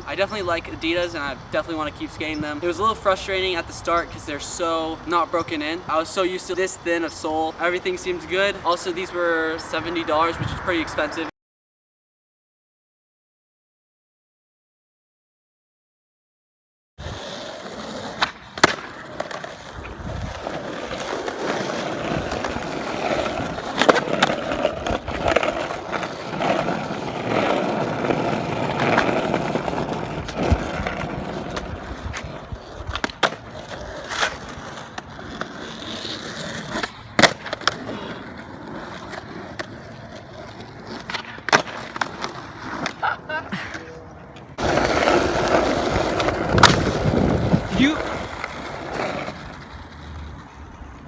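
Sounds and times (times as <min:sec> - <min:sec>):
skateboard wheels rolling on pavement: 0:00.0 - 0:11.3, 0:17.0 - 0:51.0
skateboard clacks: 0:17.5 - 0:51.0.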